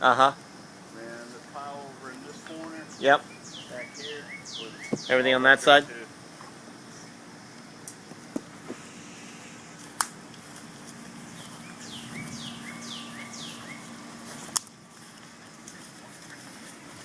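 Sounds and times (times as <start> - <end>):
low hum: 6.6 - 17.0.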